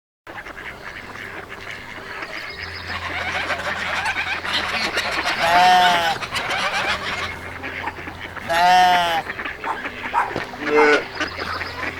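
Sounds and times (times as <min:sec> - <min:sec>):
waterfowl chattering calls: 0:00.3 - 0:11.9
loud drawn-out honk: 0:03.0 - 0:11.2.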